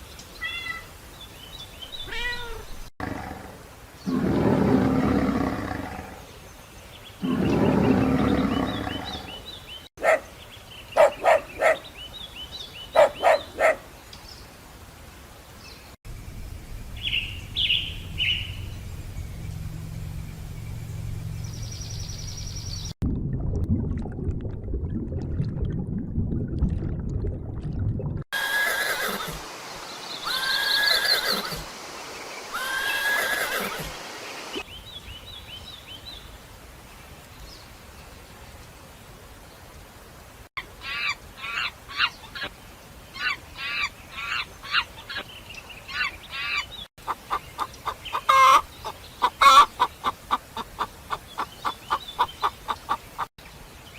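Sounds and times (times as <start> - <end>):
low hum: 16.1 - 28.2
low rumble: 16.1 - 28.2
rising-and-falling animal calls: 32.5 - 34.0.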